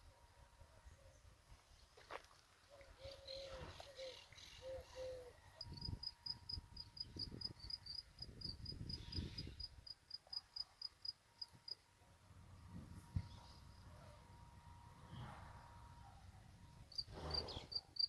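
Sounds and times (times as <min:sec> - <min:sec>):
insect chirping: 0:05.6 - 0:11.5, 0:16.9 - 0:18.0.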